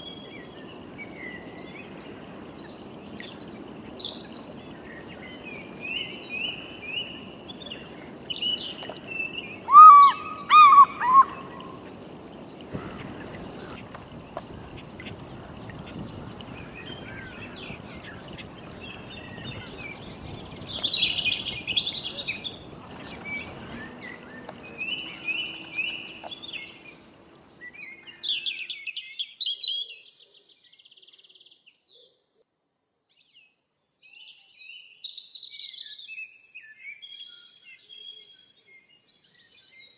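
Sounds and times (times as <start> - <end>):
birds chirping and trilling: 0.0 - 31.7
low outdoor background noise: 0.0 - 39.9.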